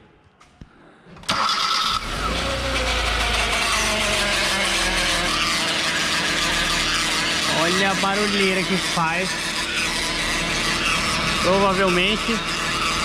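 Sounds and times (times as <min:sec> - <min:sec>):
car starter cranking: 0:01.2 - 0:06.2
transmission rattle and whine: 0:01.3 - 0:13.0
car engine running: 0:02.0 - 0:13.0.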